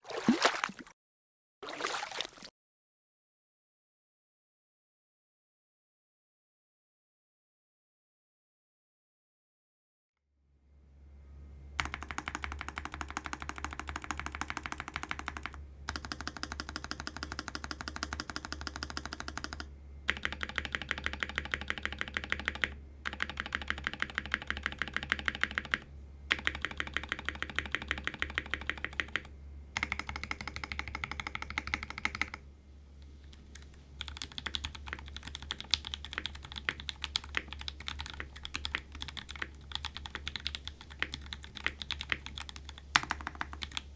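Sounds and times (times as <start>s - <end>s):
keyboard keys pressed rapidly: 11.8s - 32.4s, 33.3s - 43.9s
typing on mechanical keyboard: 11.8s - 32.4s, 33.3s - 43.9s.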